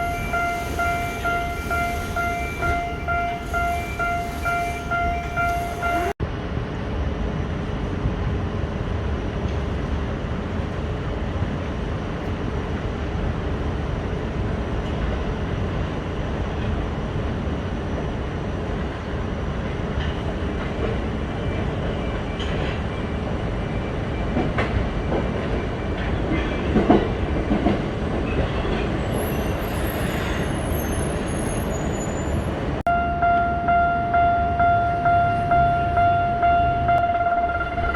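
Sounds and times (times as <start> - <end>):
train wheels rumbling on rail: 0.0 - 37.9
wheel squeal: 28.4 - 32.6.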